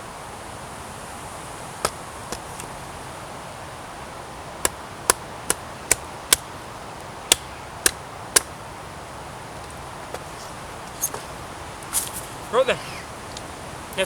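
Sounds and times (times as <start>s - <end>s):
axe chopping wood: 1.8s - 2.7s, 4.6s - 6.5s, 7.3s - 8.6s.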